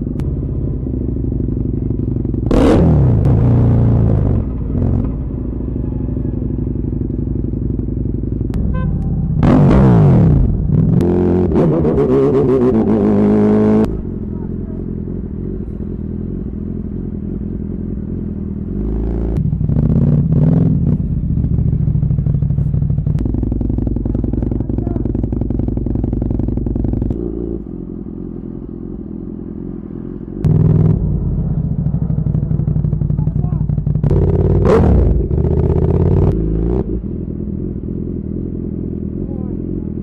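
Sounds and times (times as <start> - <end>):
motorcycle engine revving: 0.0 - 40.0.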